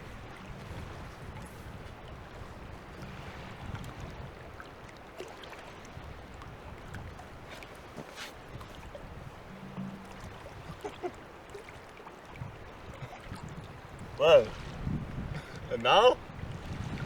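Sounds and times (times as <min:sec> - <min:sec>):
water lapping and sloshing: 0:00.0 - 0:17.0
faint small knocks: 0:09.4 - 0:11.0.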